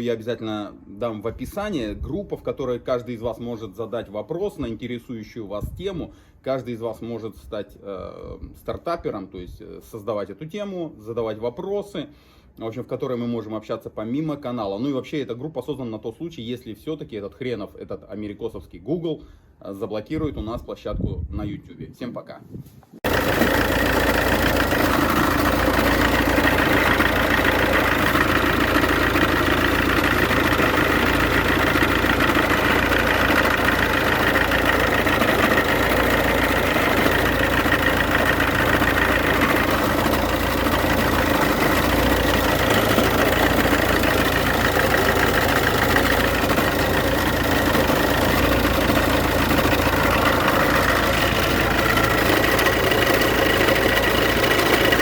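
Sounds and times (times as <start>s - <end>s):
constant whine: 23.0s - 55.0s
diesel engine idling: 23.0s - 55.0s.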